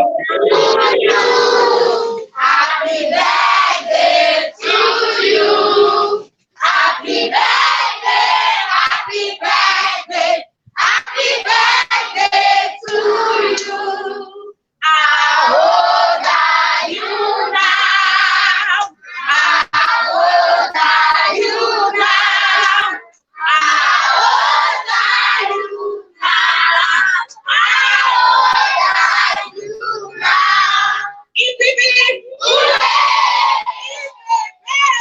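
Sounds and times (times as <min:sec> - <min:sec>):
children singing together: 0:00.0 - 0:31.2, 0:32.4 - 0:35.0.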